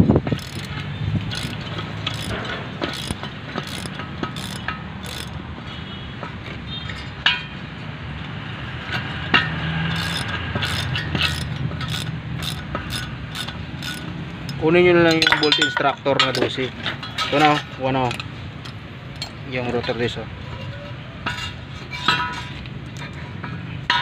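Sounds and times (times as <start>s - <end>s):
ratchet wrench clicking: 0.3s - 5.4s, 9.9s - 14.6s.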